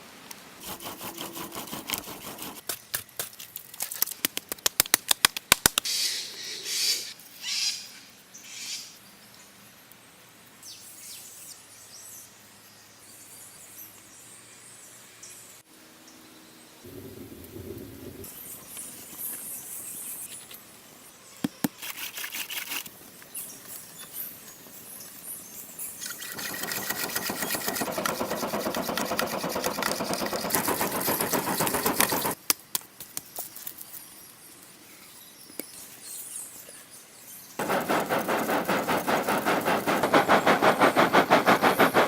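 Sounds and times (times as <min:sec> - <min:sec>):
stone being scraped by hand: 0:00.6 - 0:02.7, 0:26.3 - 0:32.4, 0:37.6 - 0:42.0.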